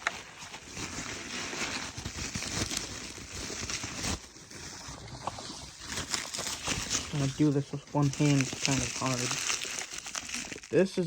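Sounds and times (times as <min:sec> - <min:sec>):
packaging rustling and crinkling: 0:00.0 - 0:11.0.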